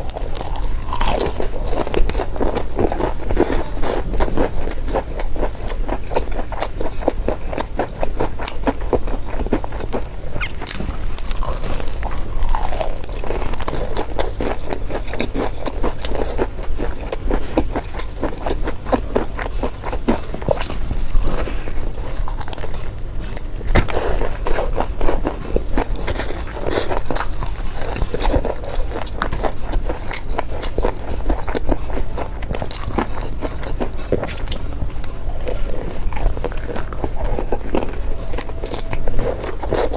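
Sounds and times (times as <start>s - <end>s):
crunching and chewing fried chicken: 0.0s - 39.9s.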